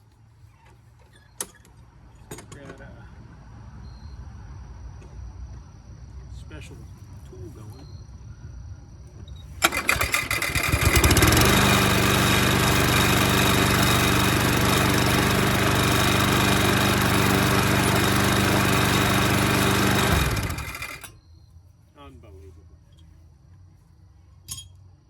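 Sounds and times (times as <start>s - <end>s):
small motor-driven machine running: 9.6s - 21.1s.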